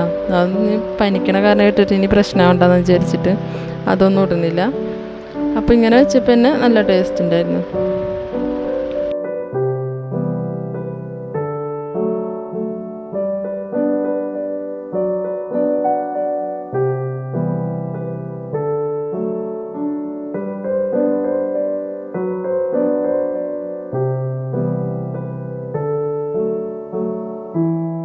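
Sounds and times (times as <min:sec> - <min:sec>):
slow bass line: 0:00.0 - 0:06.1
gentle electric piano chords: 0:00.0 - 0:28.0.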